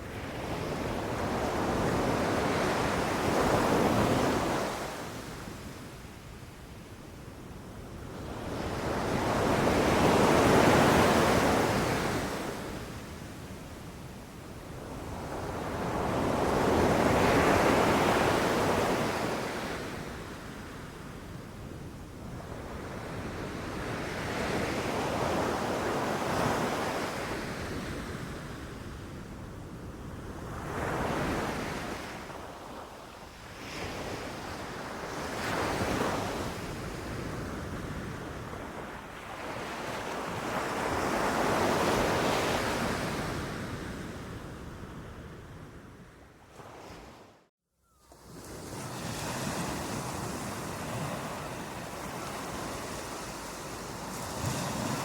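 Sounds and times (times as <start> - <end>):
ocean waves breaking on beach: 48.1 - 55.0.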